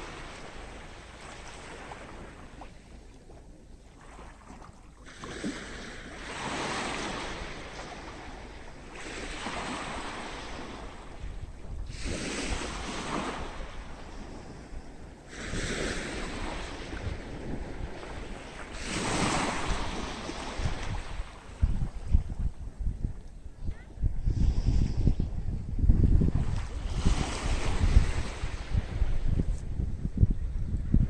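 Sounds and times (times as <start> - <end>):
sea waves breaking on beach: 0.0 - 2.8, 4.0 - 11.2, 11.9 - 21.6, 26.2 - 29.2
low wind rumble on microphone: 7.0 - 31.0.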